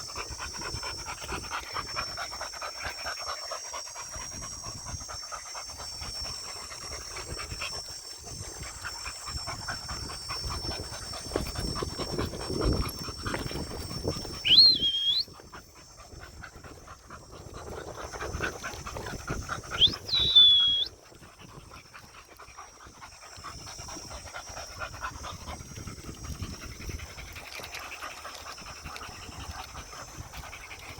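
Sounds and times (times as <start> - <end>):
dogs panting: 0.0 - 30.9
high whistled calls: 14.4 - 15.4, 19.8 - 21.0.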